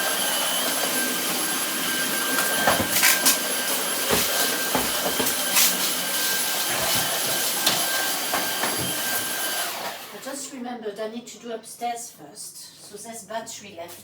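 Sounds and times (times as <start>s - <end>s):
vacuum cleaner whining: 0.0s - 10.3s.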